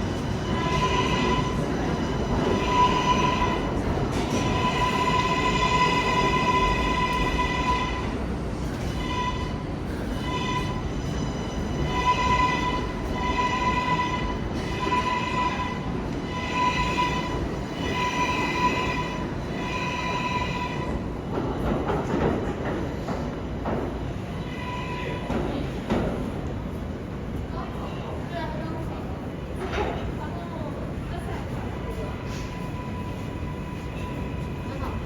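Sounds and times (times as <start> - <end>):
subway station rumble: 0.0 - 35.0.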